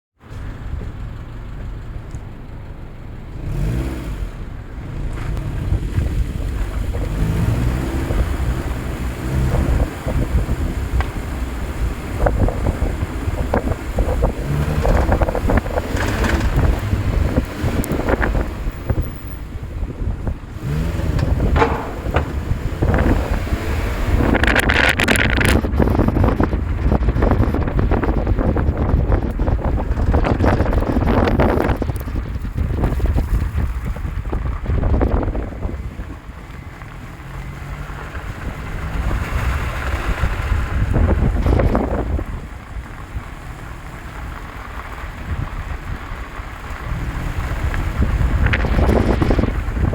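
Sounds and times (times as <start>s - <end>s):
car road and engine rumble: 0.2s - 49.9s
wind buffeting the microphone: 5.0s - 49.9s
low rumble: 14.3s - 25.7s
irregular knocks and clicks: 20.7s - 23.6s.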